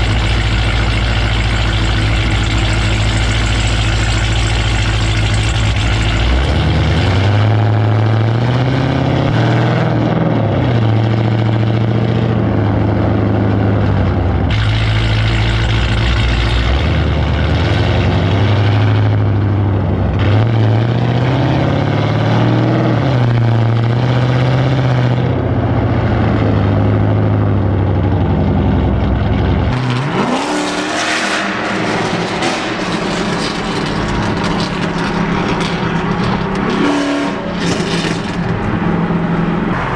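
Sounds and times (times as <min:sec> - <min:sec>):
engine revving: 0:00.0 - 0:25.4, 0:28.6 - 0:39.9
car engine droning loudly: 0:00.0 - 0:39.9.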